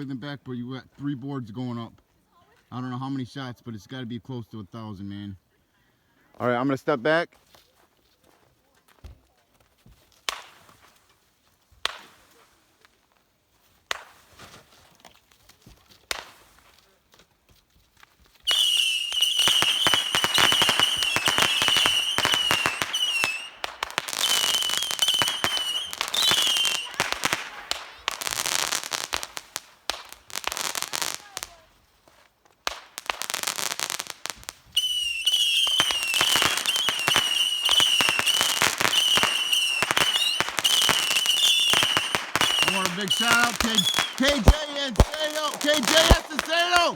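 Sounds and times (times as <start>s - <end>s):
fireworks popping and crackling: 9.9s - 11.1s, 11.7s - 14.8s, 15.9s - 16.9s, 17.9s - 46.9s
high warbling firework whistle: 18.5s - 23.5s, 24.2s - 27.3s, 34.8s - 44.2s
firework bangs: 18.5s - 31.5s, 32.6s - 46.9s.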